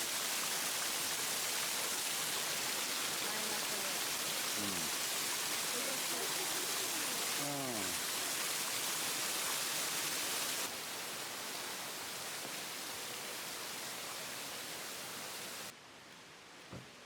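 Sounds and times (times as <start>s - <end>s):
mountain stream rushing: 0.0s - 15.8s.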